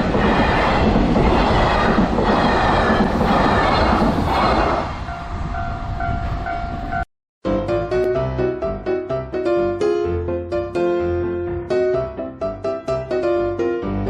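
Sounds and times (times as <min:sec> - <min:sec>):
train wheels clattering on rails: 0:00.0 - 0:04.9.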